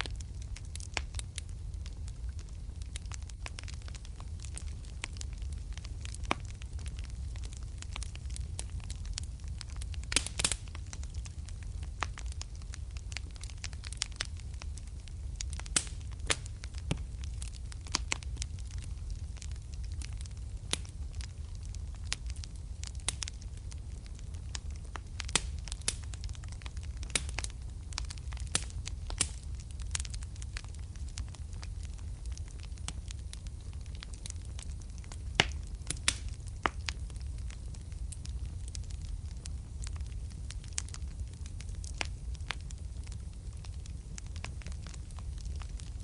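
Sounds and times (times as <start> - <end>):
fire crackling and popping: 0.0 - 46.0
fire flames rumbling: 0.0 - 46.0.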